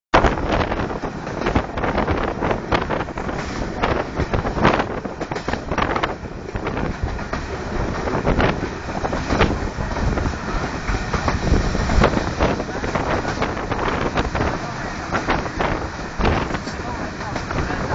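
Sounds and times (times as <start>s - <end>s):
train wheels rumbling on track: 0.2s - 17.9s
wind buffeting microphone: 0.2s - 17.9s.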